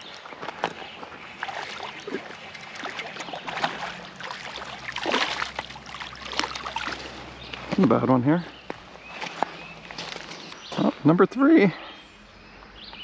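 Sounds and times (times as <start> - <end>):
fish splashing in water: 0.0 - 7.9
river rushing: 1.6 - 7.8.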